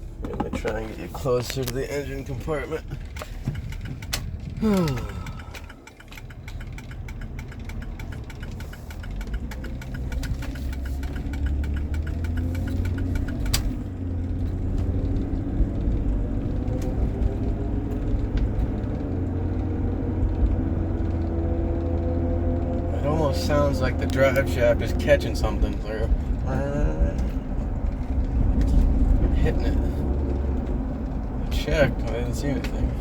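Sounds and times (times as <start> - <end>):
vehicle drivetrain drone: 0.0 - 33.0
rapid clicking: 0.2 - 33.0.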